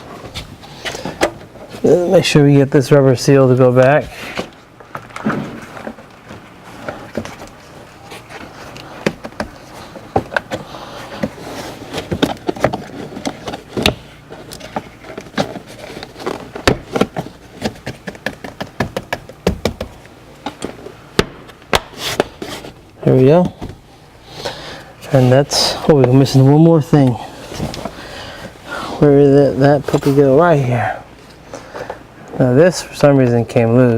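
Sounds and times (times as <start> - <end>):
rubber seal tapping and rubbing: 16.2 - 20.0.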